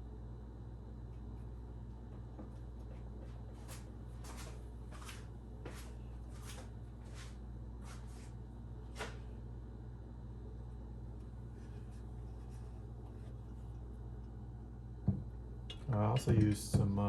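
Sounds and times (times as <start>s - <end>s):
steady low hum: 0.0s - 17.0s
light scuffs and rustles: 2.9s - 9.3s.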